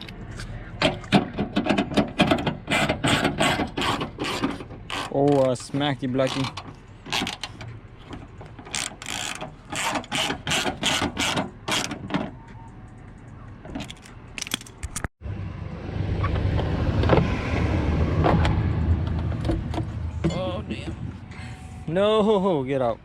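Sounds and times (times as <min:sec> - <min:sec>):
car engine rumbling: 0:00.0 - 0:23.0
ratchet clicking: 0:08.6 - 0:12.0.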